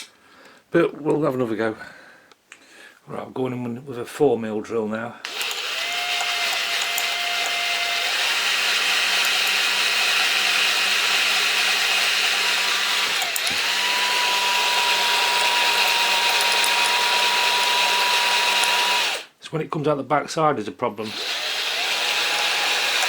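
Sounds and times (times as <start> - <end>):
electric drill boring into metal: 5.3 - 19.3, 21.0 - 23.0.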